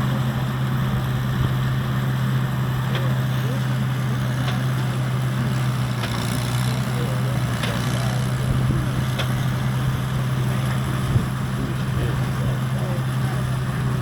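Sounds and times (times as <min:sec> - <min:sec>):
hay baler mechanical drone: 0:00.0 - 0:14.0
sharp baler clicks: 0:02.8 - 0:12.0.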